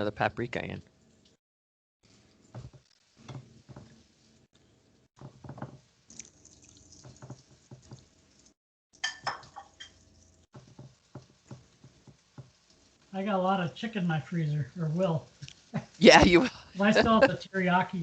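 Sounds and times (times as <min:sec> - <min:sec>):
dishes and cutlery clinking: 0:09.0 - 0:10.0.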